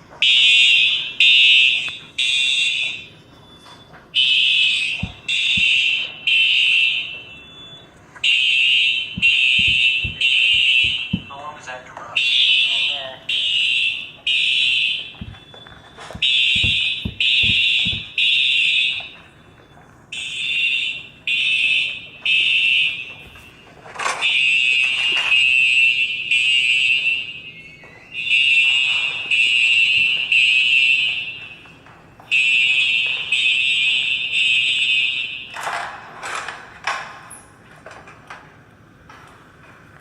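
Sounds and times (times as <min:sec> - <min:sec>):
fire alarm beeping: 0:00.0 - 0:37.6.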